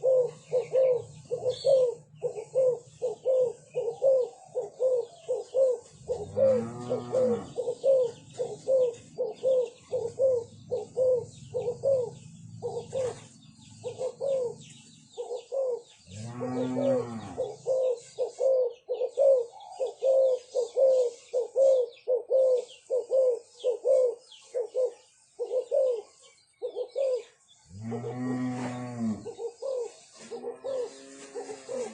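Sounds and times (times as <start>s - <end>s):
turtledoves cooing: 0.0s - 31.9s.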